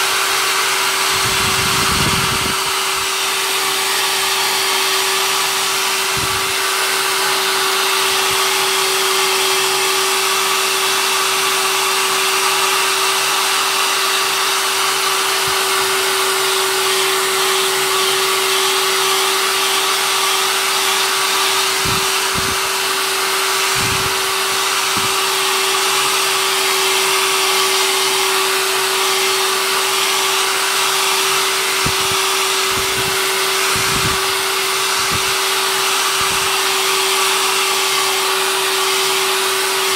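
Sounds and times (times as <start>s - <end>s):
hair dryer whining: 0.0s - 39.9s.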